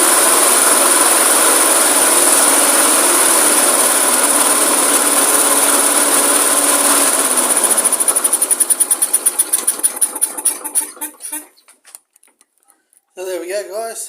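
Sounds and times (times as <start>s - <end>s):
lawn mower engine winding down: 0.0s - 11.6s.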